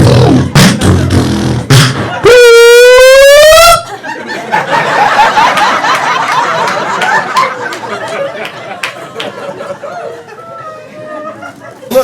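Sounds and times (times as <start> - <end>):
fire alarm whoop tone: 2.3 - 3.8
audience laughing: 3.8 - 12.0.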